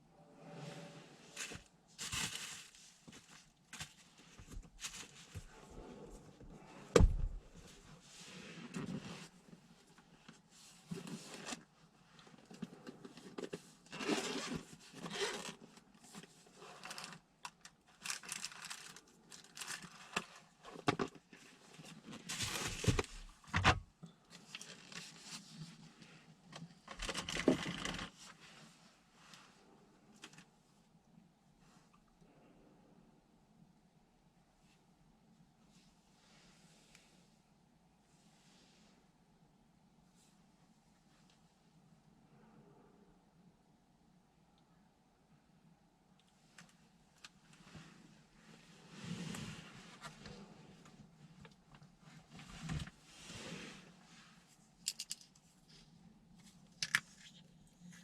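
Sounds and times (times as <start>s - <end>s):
rustling and crinkling: 0.4s - 31.0s, 46.4s - 58.0s.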